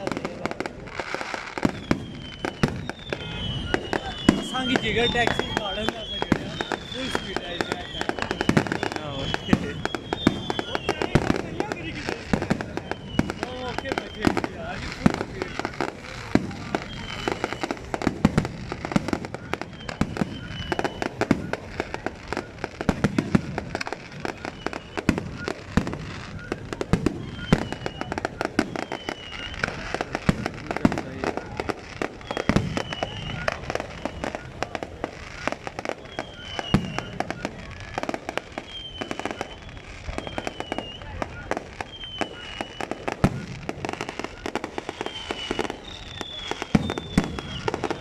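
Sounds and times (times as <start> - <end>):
fireworks crackling: 0.0 - 48.0
heavy firework bangs: 0.0 - 48.0.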